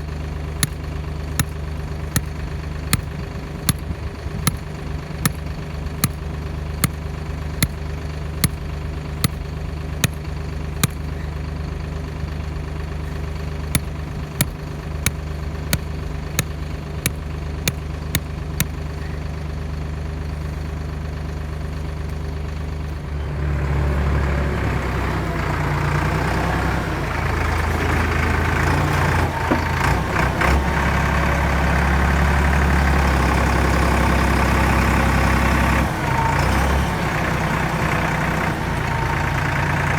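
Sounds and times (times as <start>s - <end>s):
tractor engine: 0.6s - 2.3s, 4.5s - 10.2s.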